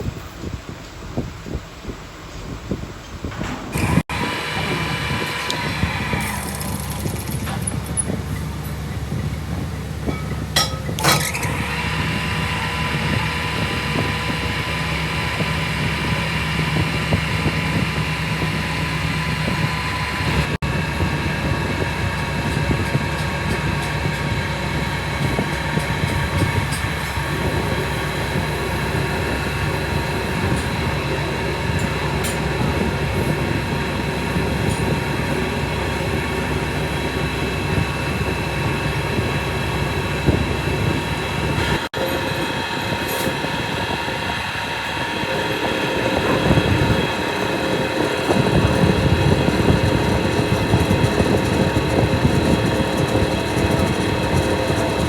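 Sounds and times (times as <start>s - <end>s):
workshop machine running: 0.0s - 55.0s.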